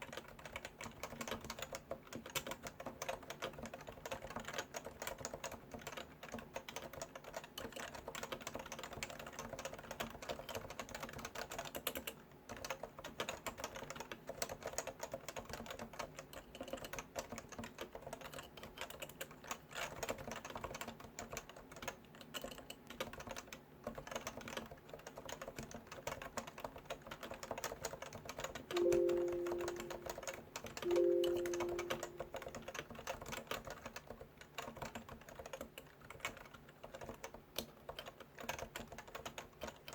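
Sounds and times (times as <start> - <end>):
keyboard typing: 0.0 - 39.9
short pitched tones: 28.8 - 30.1, 30.9 - 32.4.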